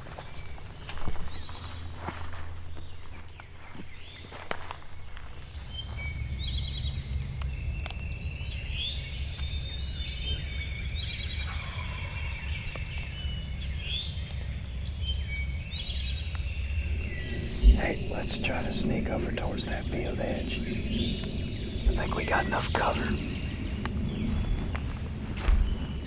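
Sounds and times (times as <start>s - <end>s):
birds singing and calling: 0.0s - 26.0s
low rumble: 14.7s - 26.0s.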